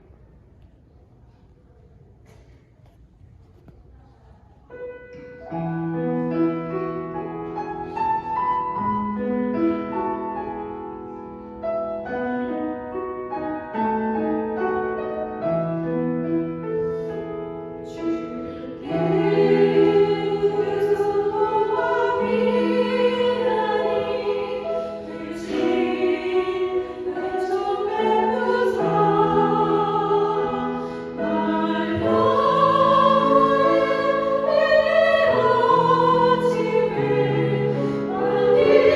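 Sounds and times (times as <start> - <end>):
piano accompaniment: 4.7 - 38.9
choir singing a hymn: 17.9 - 38.9.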